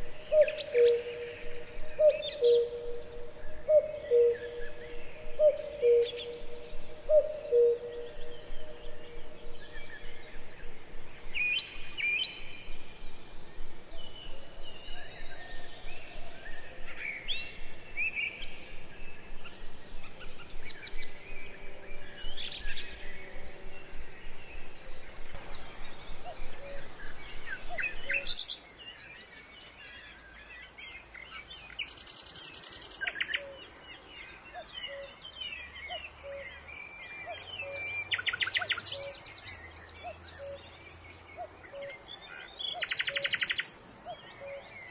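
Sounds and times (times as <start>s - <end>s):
bird trills: 0.0s - 13.1s
outdoor background noise: 0.0s - 44.9s
wild birds singing and calling: 0.0s - 44.9s.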